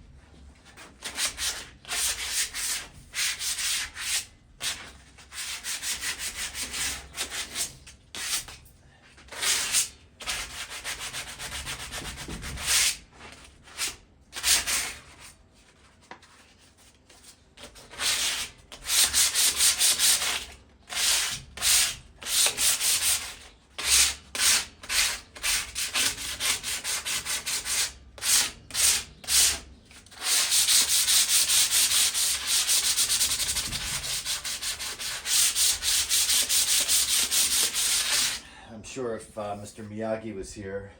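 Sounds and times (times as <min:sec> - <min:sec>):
sandpaper rubbing on metal: 0:01.0 - 0:08.5, 0:09.3 - 0:13.0, 0:17.9 - 0:38.4.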